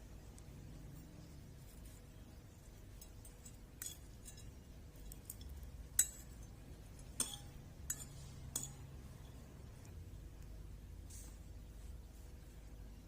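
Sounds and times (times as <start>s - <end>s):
cutlery clinking against dish: 3.0s - 8.9s.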